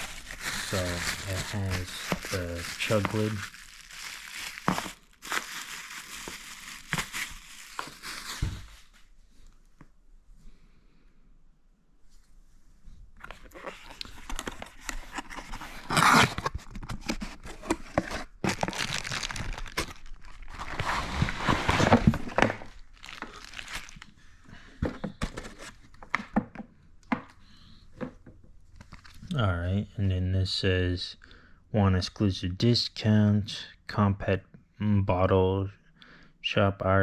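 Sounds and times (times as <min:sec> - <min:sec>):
packaging tearing: 0:00.0 - 0:08.9, 0:13.5 - 0:17.7, 0:18.3 - 0:24.1
packaging crinkling and rustling: 0:00.0 - 0:09.1, 0:13.2 - 0:24.2.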